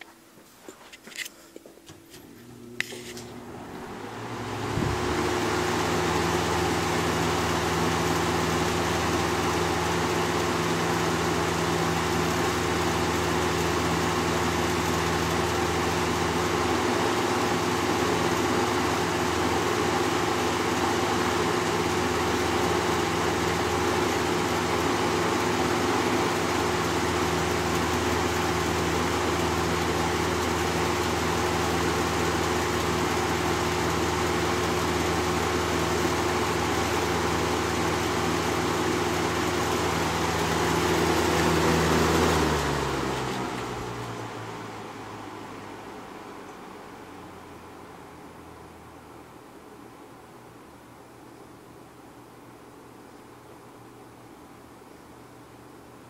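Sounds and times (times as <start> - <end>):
box fan motor hum: 0.0 - 50.6
rush of air from fan: 2.3 - 46.4.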